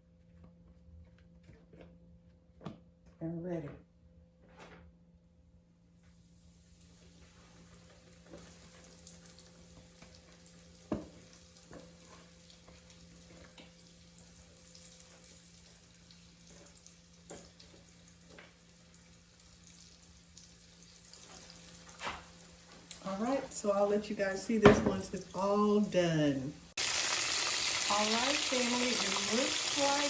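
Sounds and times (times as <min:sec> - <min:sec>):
meat sizzling in hot oil: 0:06.9 - 0:23.0, 0:26.7 - 0:30.0.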